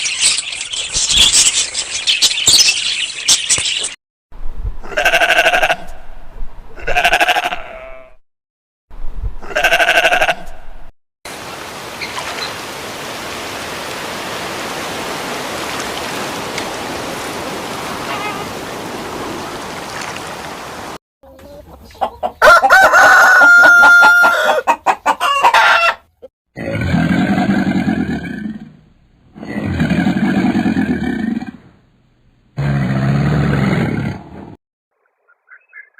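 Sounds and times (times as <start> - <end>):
farm animal calls: 6.8 - 8.2, 9.5 - 10.4.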